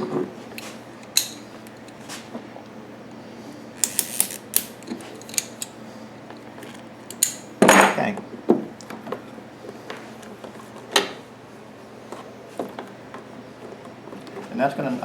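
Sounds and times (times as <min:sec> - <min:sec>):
metal hose clamp clicking: 0:07.1 - 0:07.5.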